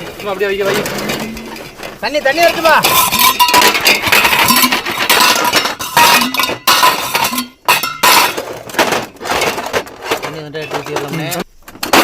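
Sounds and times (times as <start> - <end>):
cooking utensils clinking: 2.8 - 8.4.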